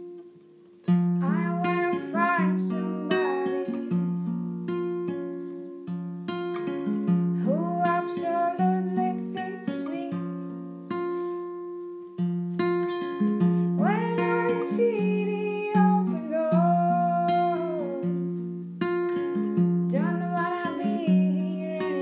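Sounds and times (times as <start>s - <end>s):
acoustic guitar picking: 0.0s - 22.0s
woman singing: 1.2s - 4.2s, 7.4s - 10.6s, 13.7s - 18.3s, 19.9s - 22.0s.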